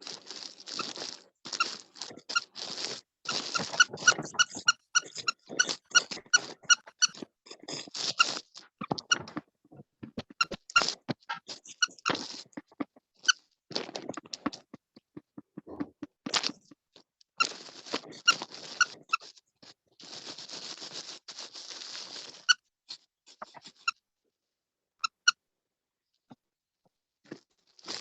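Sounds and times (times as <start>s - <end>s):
scratching and rustling: 0.0s - 16.8s, 17.4s - 23.9s
short squeaks: 3.3s - 7.3s.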